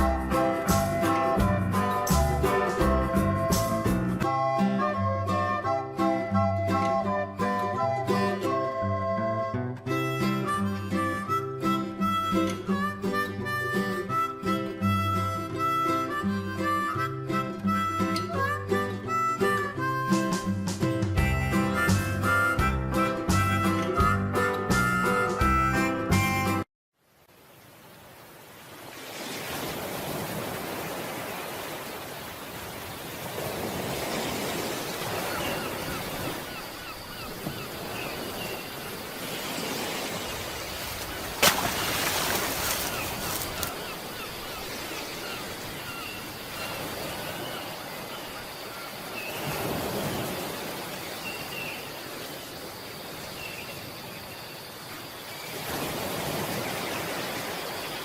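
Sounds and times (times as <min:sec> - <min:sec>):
ocean waves washing in: 0:27.1 - 0:58.0.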